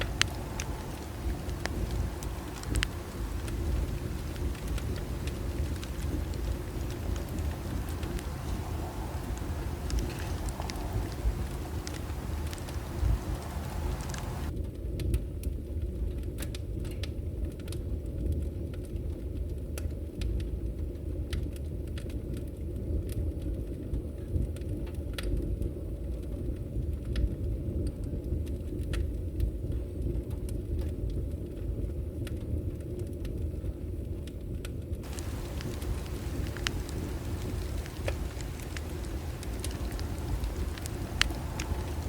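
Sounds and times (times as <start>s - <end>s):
bonfire crackling and popping: 0.0s - 14.5s, 35.0s - 42.0s.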